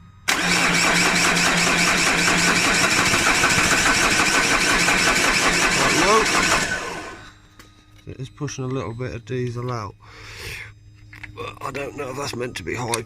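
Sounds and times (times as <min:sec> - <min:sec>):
starter motor cranking engine: 0:00.3 - 0:07.4.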